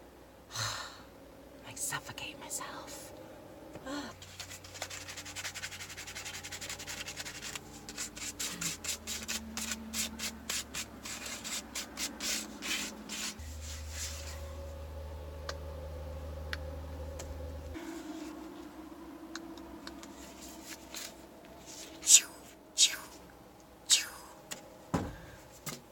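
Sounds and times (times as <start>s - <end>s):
steady low hum: 0.0s - 25.9s
sandpaper sanding wood: 4.2s - 14.4s.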